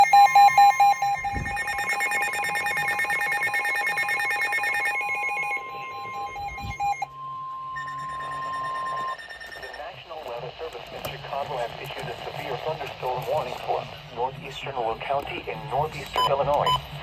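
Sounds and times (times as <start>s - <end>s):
rapid electronic trilling: 0.0s - 10.6s
repeated electronic beeps: 0.0s - 13.8s, 16.1s - 17.0s
steady warning tone: 0.0s - 17.0s.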